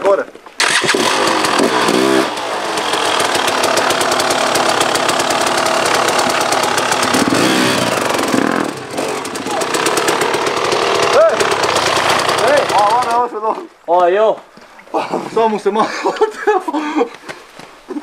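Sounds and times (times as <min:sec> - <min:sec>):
dirt bike engine revving hard: 0:00.6 - 0:13.2.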